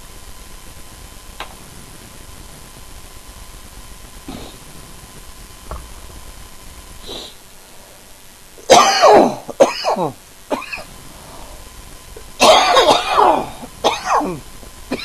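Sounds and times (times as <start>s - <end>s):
man coughing and clearing throat: 8.7s - 10.9s, 12.4s - 15.0s.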